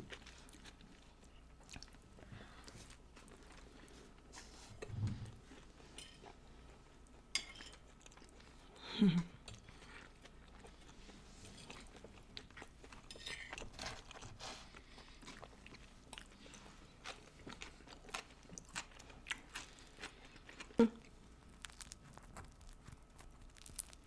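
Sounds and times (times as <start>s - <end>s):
chewing and crunching food: 0.0s - 24.0s.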